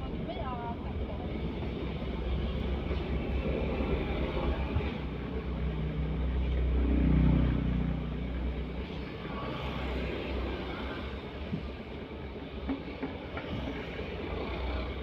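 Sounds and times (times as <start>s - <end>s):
road noise rumble: 0.0s - 15.0s
passing vehicle engine: 2.4s - 12.0s.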